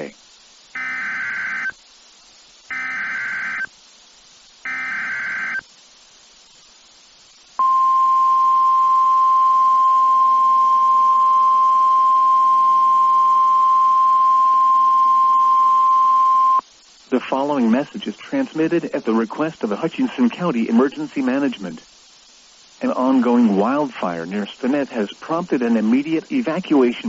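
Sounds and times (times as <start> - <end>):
buzzing digital data bursts: 0.7 - 1.8, 2.7 - 3.7, 4.6 - 5.7
steady warning alarm tone: 0.8 - 1.7, 2.7 - 3.7, 4.7 - 5.6.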